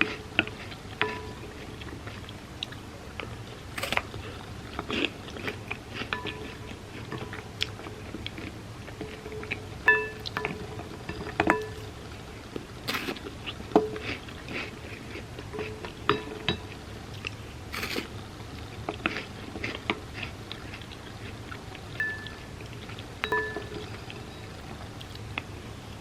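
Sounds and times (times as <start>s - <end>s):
chewing and crunching cereal: 0.0s - 26.0s
spoon clinking against bowl: 1.0s - 1.4s, 6.1s - 7.4s, 9.0s - 11.9s, 15.6s - 16.8s, 22.0s - 22.5s, 23.2s - 24.1s.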